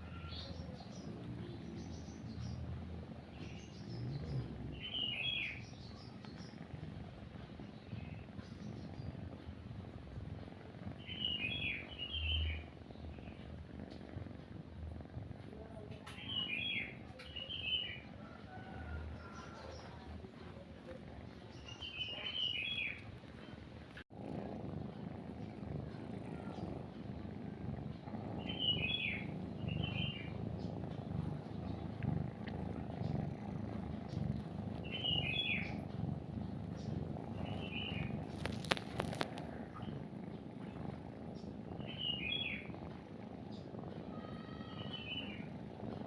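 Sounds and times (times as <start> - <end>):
songbird chirping: 0.0 - 6.6, 11.0 - 13.6, 15.6 - 23.6, 28.4 - 40.0, 40.6 - 42.7, 43.5 - 45.5
cat purring: 0.0 - 46.0.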